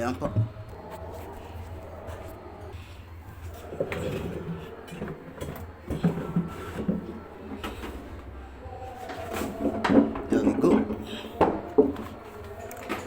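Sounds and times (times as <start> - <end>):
clicking scraping and rattling: 3.3 - 8.3.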